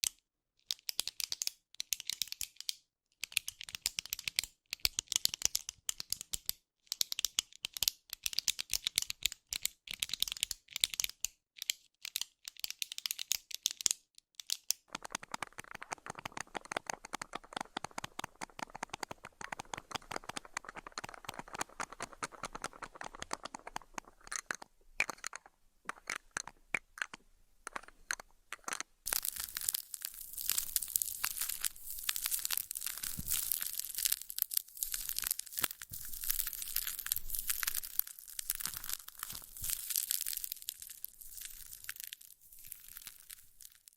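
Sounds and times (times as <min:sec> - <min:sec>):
close crackling and clicking: 0:00.8 - 0:43.9
crinkly burst: 0:29.1 - 0:43.9.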